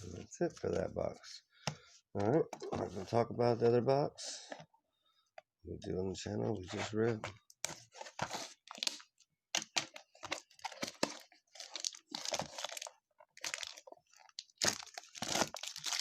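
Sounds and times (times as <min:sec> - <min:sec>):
packaging crinkling and rustling: 0:07.7 - 0:16.0
packaging tearing: 0:09.6 - 0:16.0.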